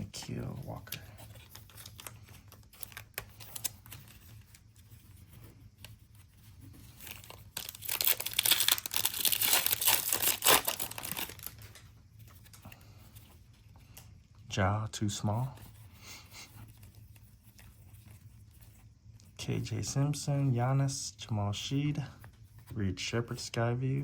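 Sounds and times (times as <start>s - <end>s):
card pack wrapper tearing: 7.0s - 11.8s.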